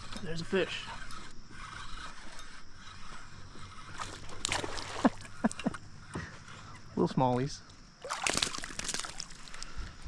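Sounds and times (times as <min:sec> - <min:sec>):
spinning reel cranking: 0:00.0 - 0:04.0
fish splashing at surface: 0:08.0 - 0:09.6.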